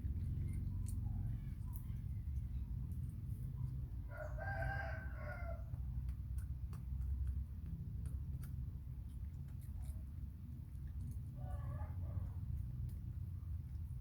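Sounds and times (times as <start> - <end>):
rooster crowing: 4.1 - 5.7.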